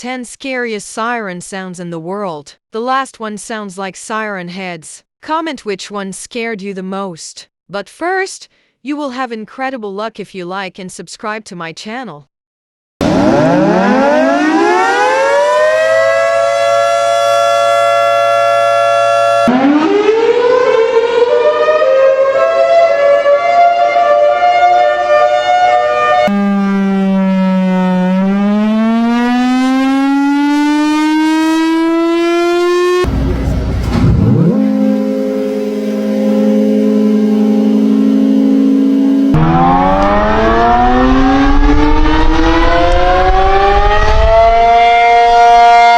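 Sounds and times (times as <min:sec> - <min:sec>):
sound sweeping down and up: 0:13.0 - 0:15.5, 0:33.0 - 0:45.6
warning sirens wailing: 0:13.0 - 0:45.9.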